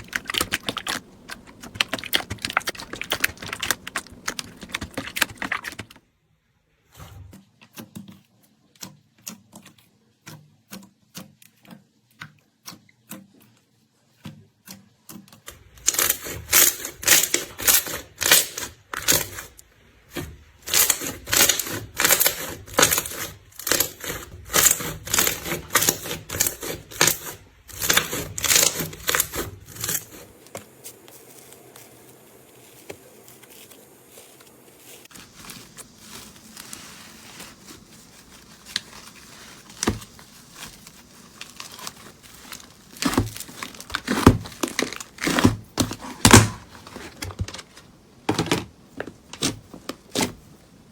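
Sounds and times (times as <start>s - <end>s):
quiet hiss: 28.8s - 50.9s.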